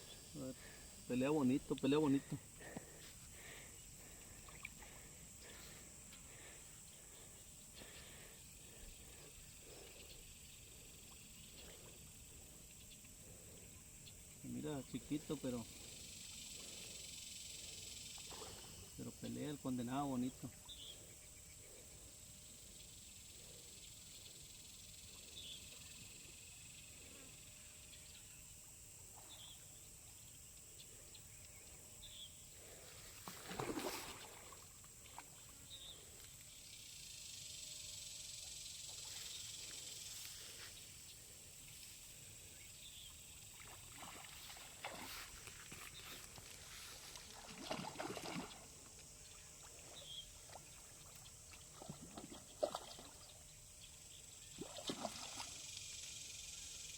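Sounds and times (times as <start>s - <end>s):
steady high hiss: 0.0s - 9.6s
faint chirps: 0.0s - 56.9s
fish splashing in water: 33.2s - 35.4s, 47.2s - 48.8s, 49.8s - 53.3s, 54.5s - 55.6s.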